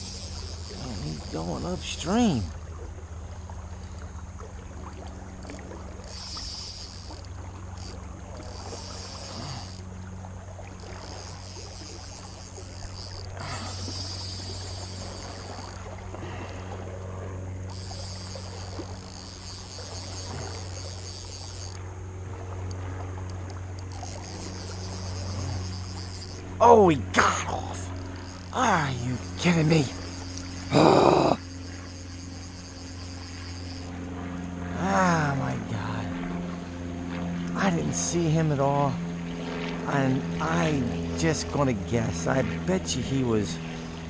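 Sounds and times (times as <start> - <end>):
creek water flowing: 0.0 - 44.0
crickets trilling: 0.0 - 44.0.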